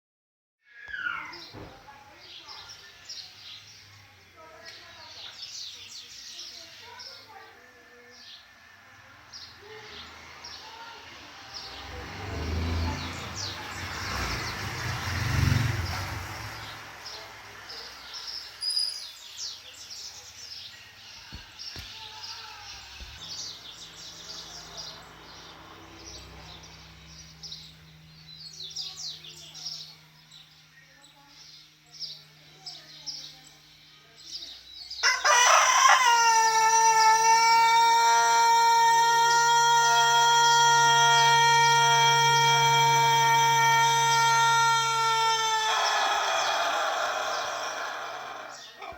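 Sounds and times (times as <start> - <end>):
small birds chirping: 0.6 - 35.4, 37.0 - 48.9
motor vehicle passing: 6.2 - 21.7, 22.6 - 30.7, 38.2 - 48.9
rooster crowing: 35.0 - 48.9.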